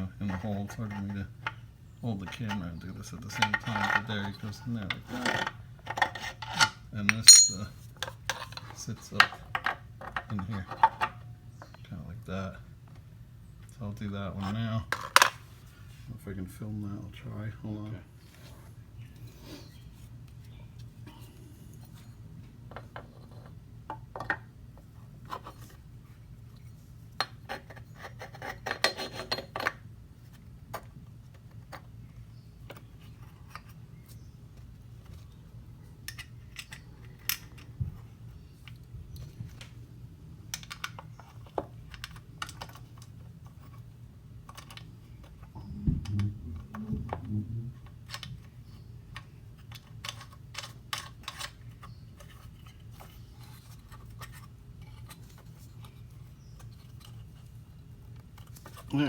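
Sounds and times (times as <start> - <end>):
metal parts clicking: 7.1 - 7.7.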